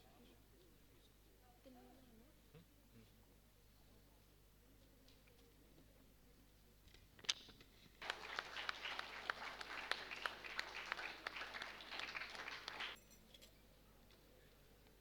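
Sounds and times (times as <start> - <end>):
audience applauding: 8.0 - 13.0.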